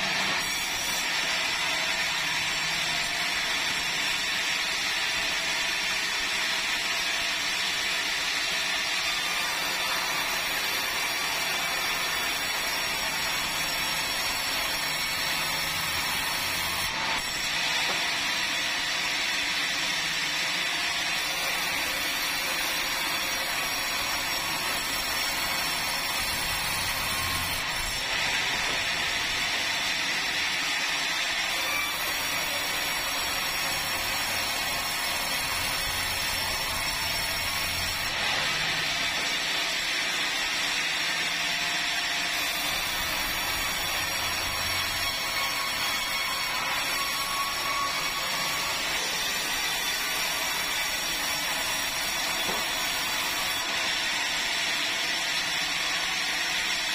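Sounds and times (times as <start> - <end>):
power saw cutting log: 0.0 - 56.9.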